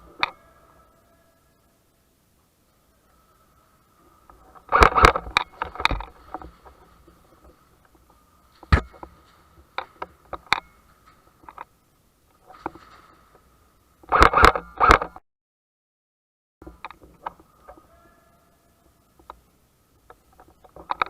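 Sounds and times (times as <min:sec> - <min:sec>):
sharp clicks and knocks: 0:19.2 - 0:21.0.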